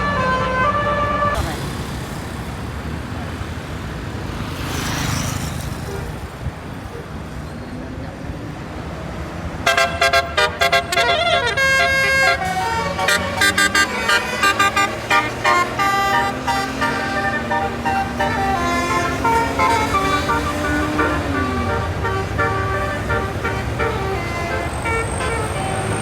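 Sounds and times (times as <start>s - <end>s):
multi-trumpet air horn melody: 0.0s - 1.4s, 9.6s - 26.0s
engine running: 1.3s - 7.0s, 11.4s - 26.0s.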